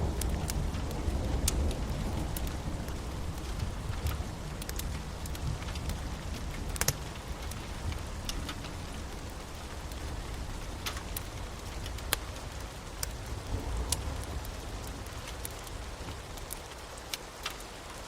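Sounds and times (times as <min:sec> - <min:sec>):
steady rain: 0:00.0 - 0:18.0
sharp crackles: 0:00.1 - 0:17.7.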